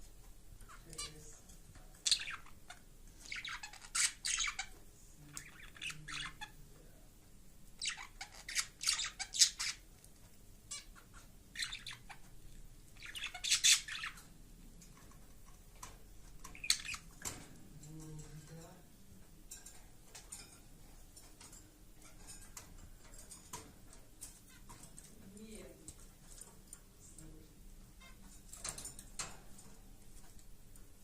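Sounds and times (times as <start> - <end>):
budgerigar chirping: 2.1 - 4.8, 5.4 - 6.5, 7.8 - 9.8, 10.7 - 12.3, 13.0 - 14.2, 16.5 - 17.1.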